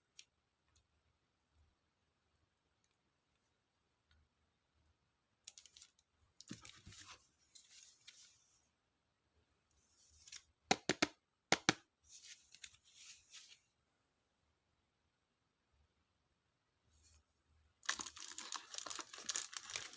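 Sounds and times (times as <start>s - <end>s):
paper and plastic rustling: 5.5s - 8.5s, 12.1s - 13.7s, 17.8s - 19.9s.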